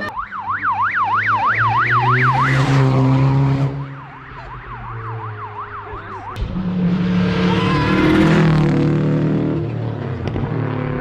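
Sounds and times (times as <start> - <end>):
siren yelping: 0.0 - 6.6, 7.2 - 8.6
vehicle engine: 0.0 - 11.0
rush of noise: 6.4 - 9.5.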